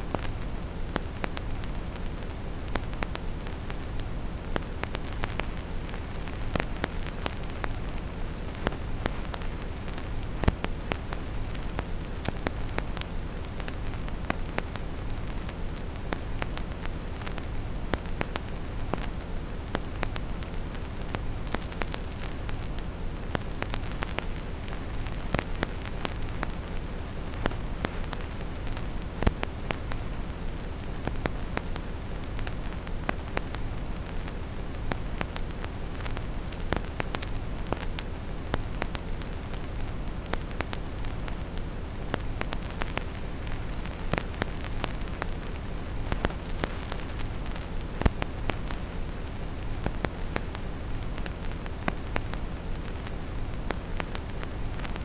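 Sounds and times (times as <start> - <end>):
deep brown noise: 0.0 - 55.0
vinyl stylus clicks and pops: 21.1 - 24.2.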